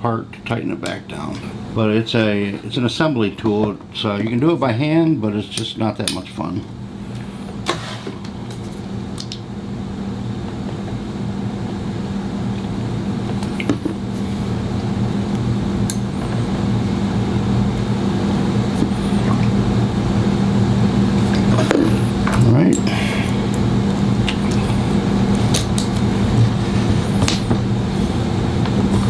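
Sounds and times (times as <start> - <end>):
electric motor hum: 9.8 - 29.0.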